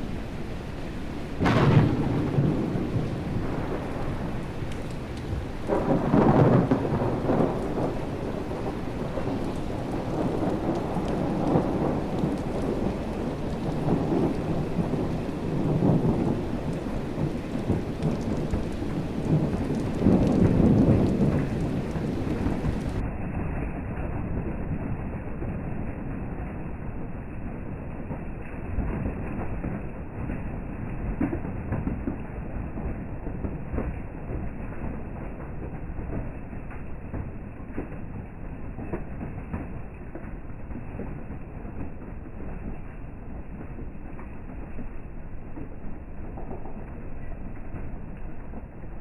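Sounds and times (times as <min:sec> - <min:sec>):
rolling rumbles of thunder: 0:00.0 - 0:49.0
steady rain: 0:00.0 - 0:49.0
sharp thunderclap: 0:01.3 - 0:23.0.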